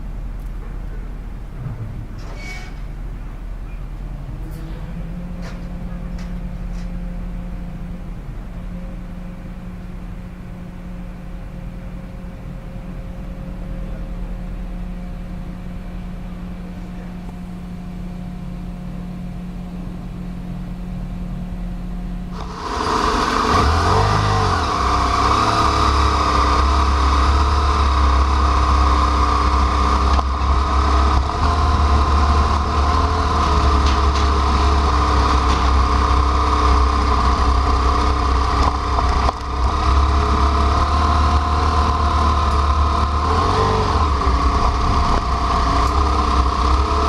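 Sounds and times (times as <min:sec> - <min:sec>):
motorcycle engine running: 0:21.3 - 0:47.0.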